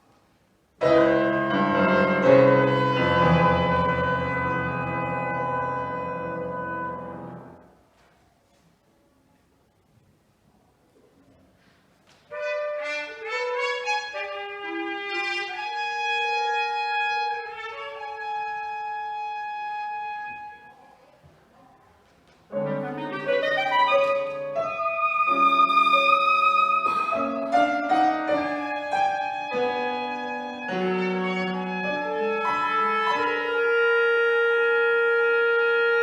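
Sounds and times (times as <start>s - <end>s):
clarinet: 0.8s - 7.6s, 12.3s - 21.0s, 22.5s - 36.0s
low piano notes: 0.8s - 7.6s, 22.5s - 35.7s
trumpet: 0.8s - 7.7s, 12.3s - 20.9s, 22.6s - 36.0s.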